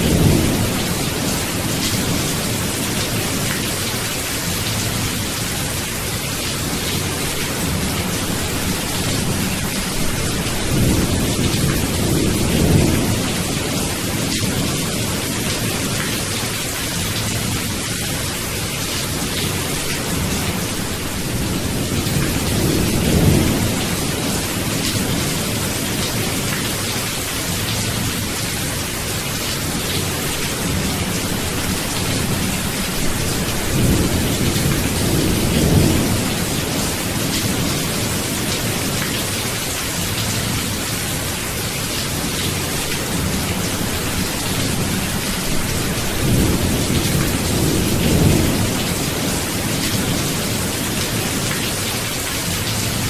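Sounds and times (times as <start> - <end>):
steady rain: 0.0 - 53.0.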